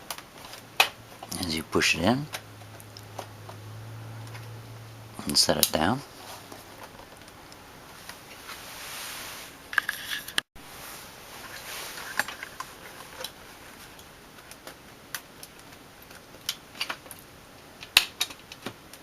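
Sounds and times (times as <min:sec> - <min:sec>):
clicks and rustling of handling: 0:05.2 - 0:08.6, 0:11.4 - 0:19.0.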